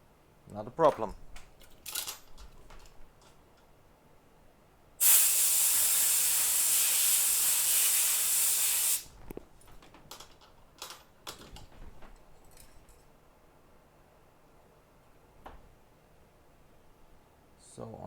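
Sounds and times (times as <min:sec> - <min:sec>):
aerosol spray can hissing: 0:05.0 - 0:09.1.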